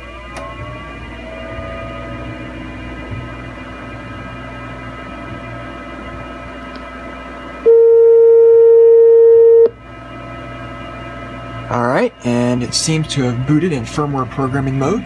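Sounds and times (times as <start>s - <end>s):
computer fans humming: 0.0s - 15.0s
loud single-pitch beep: 7.6s - 9.7s.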